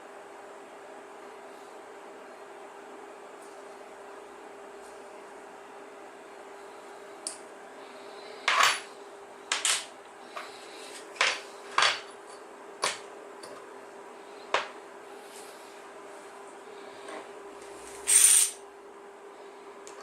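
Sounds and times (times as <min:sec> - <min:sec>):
faint steady hum: 0:00.0 - 0:20.0
metal pieces clinking on surface: 0:18.0 - 0:18.6.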